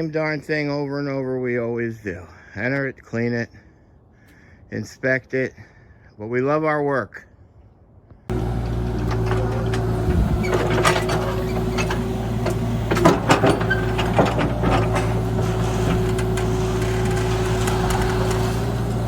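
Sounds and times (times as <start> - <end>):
metallic clanks and knocks: 8.3 - 18.4
heavy machinery engine running: 8.3 - 19.0.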